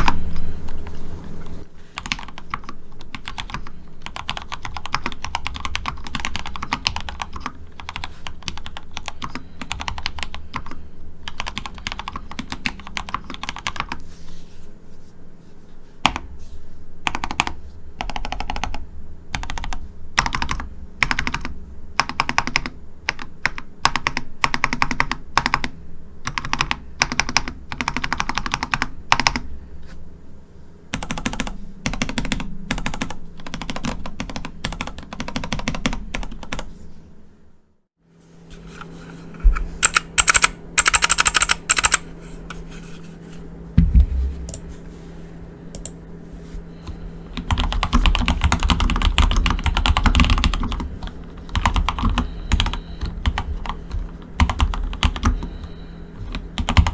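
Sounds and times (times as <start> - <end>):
mechanical keyboard typing: 2.0 - 14.0, 17.0 - 29.4, 31.0 - 36.7, 39.6 - 42.1, 47.3 - 56.9.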